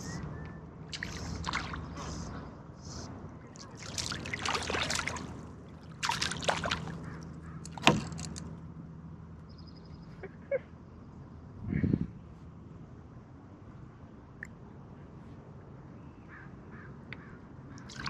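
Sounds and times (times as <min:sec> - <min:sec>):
steady low hum: 0:00.0 - 0:18.0
water splashing around a boat: 0:00.9 - 0:02.4, 0:03.4 - 0:08.6, 0:17.8 - 0:18.0.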